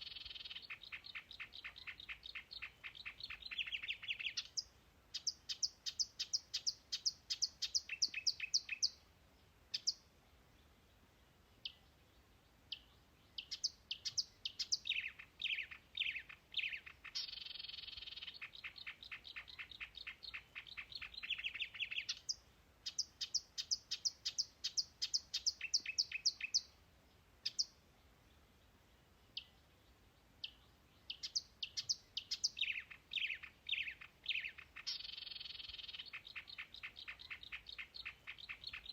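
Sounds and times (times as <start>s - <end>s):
songbird chirping and trilling: 0.0s - 38.9s.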